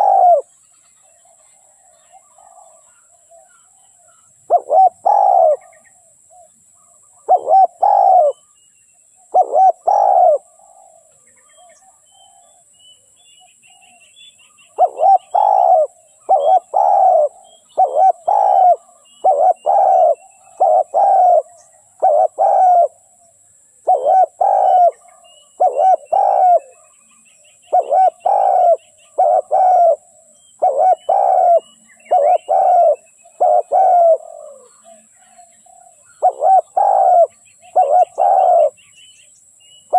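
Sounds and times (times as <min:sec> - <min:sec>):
dove cooing: 0:00.0 - 0:00.5, 0:01.2 - 0:08.5, 0:09.3 - 0:12.6, 0:14.7 - 0:38.8
small birds chirping: 0:00.0 - 0:39.9.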